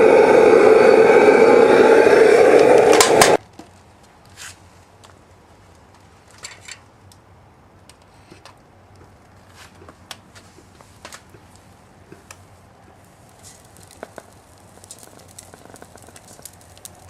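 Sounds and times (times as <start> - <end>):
loud whirring air blower: 0.0 - 3.4.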